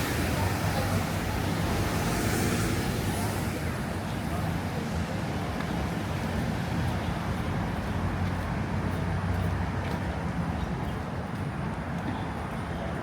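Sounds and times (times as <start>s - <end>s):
road traffic rumble: 0.0s - 13.0s.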